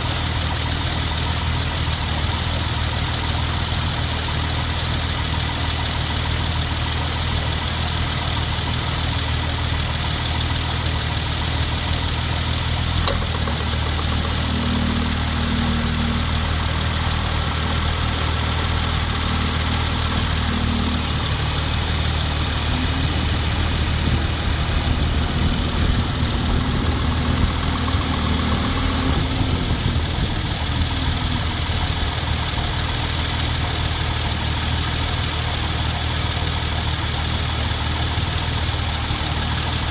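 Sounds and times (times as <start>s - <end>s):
car engine idling: 0.0s - 39.9s
loud knocking: 12.9s - 16.0s.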